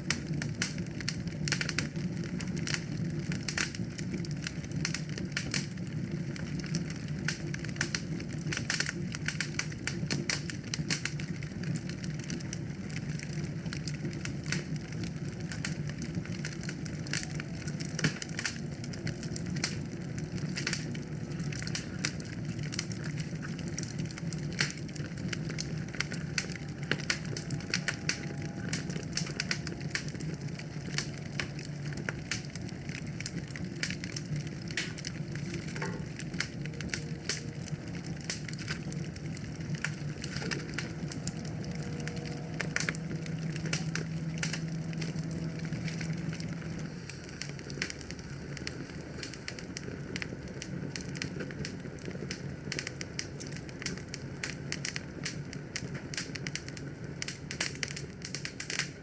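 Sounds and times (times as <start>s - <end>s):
low steady rumble: 0.0s - 55.9s
wood fire crackling: 0.0s - 59.0s.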